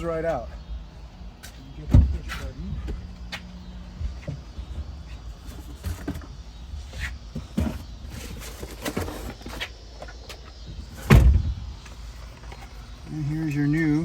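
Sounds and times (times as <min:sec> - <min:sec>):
loud thump: 0:11.0 - 0:11.7.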